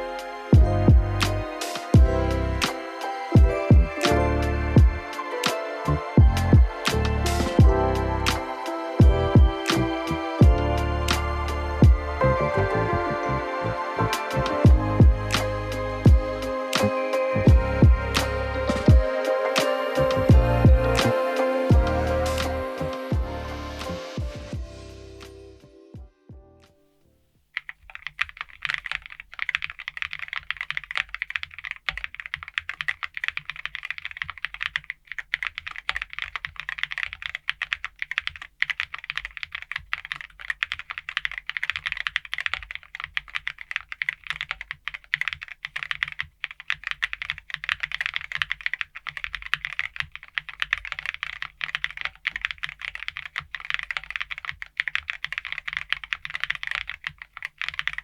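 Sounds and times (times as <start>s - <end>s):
keyboard key clicks: 27.6s - 58.0s.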